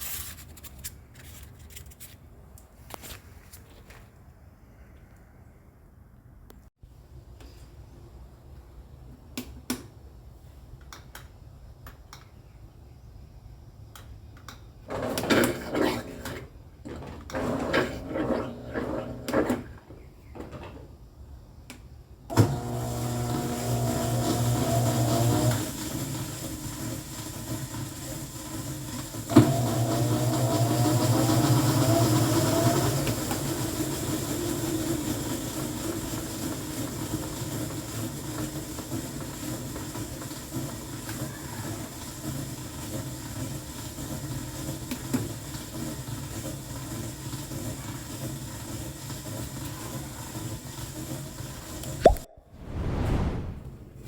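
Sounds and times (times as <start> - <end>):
washing machine motor spinning: 17.3 - 19.7, 22.3 - 51.8.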